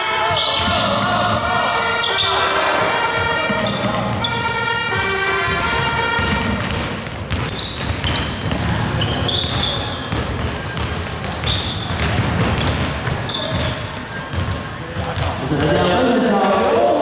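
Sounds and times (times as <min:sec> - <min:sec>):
shoes squeaking: 0:00.0 - 0:17.0
basketball bouncing on court: 0:00.2 - 0:16.9.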